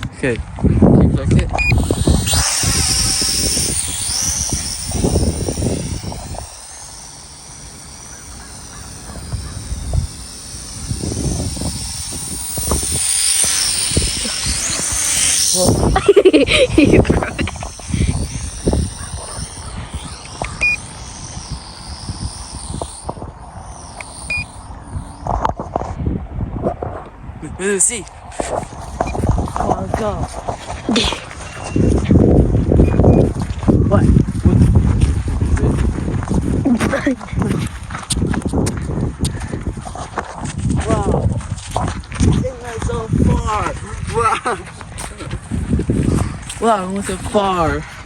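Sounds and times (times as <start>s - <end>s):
wind on microphone: 0.0s - 27.4s
short electronic beeps: 1.6s - 25.5s
drone propellers whining: 1.6s - 25.9s.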